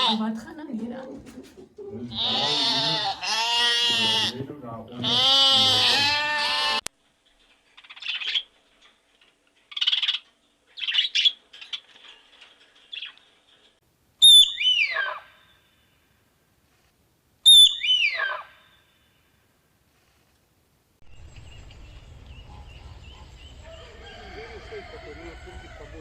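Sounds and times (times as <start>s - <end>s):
loud descending bird calls: 5.0s - 6.8s, 14.2s - 15.7s, 17.5s - 19.0s
bird chirps: 14.2s - 15.8s, 17.4s - 19.1s, 21.0s - 24.1s.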